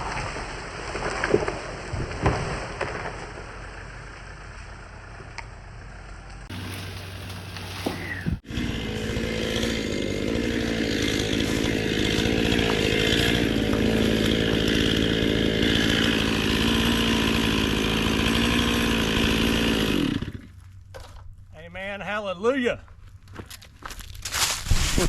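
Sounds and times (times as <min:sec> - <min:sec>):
chainsaw cutting wood: 0:06.5 - 0:20.7.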